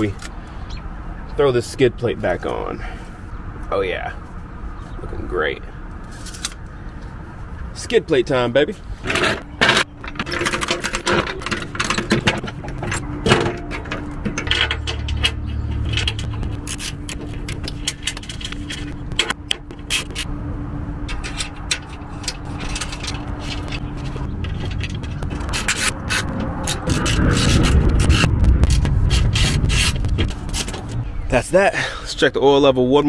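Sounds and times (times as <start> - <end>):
metal plate scraping and knocking: 9.0 - 20.3, 21.1 - 31.0.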